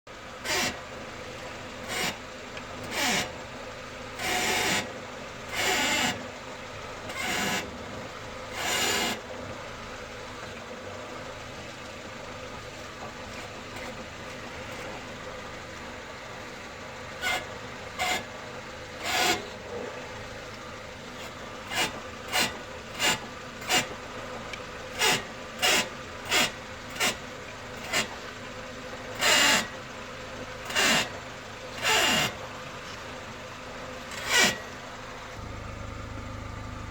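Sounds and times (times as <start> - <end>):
steering rasping creak: 0.5 - 0.9, 1.8 - 2.2, 2.8 - 3.4, 13.0 - 15.0, 17.2 - 18.4, 19.0 - 19.9, 21.1 - 24.0, 24.8 - 28.3, 29.1 - 29.8, 30.6 - 33.2, 34.0 - 35.4.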